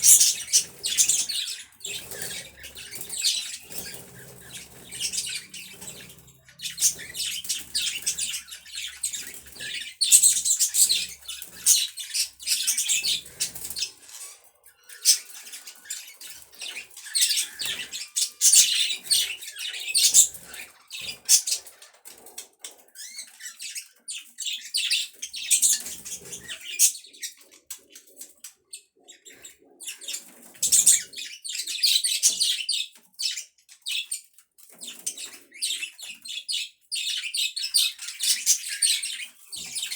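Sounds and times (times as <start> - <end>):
budgerigars chattering: 0.0 - 21.8.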